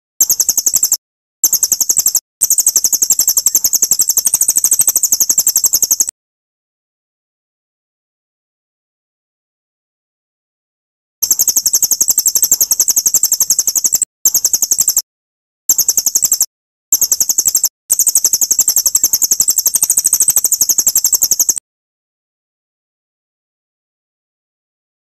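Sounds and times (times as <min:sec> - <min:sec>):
songbird trill: 0:00.2 - 0:06.1, 0:11.2 - 0:15.0, 0:15.7 - 0:21.6.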